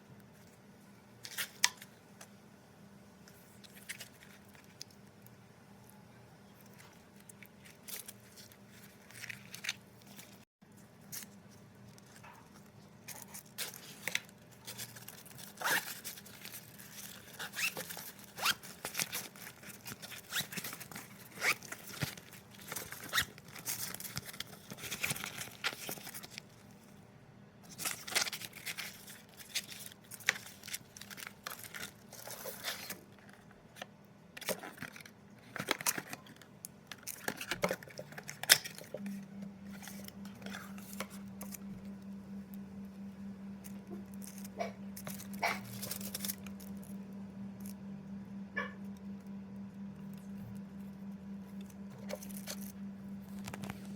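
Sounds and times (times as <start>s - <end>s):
packaging rustling and tearing: 6.6s - 26.8s, 27.7s - 33.5s, 34.4s - 39.0s, 44.2s - 46.9s.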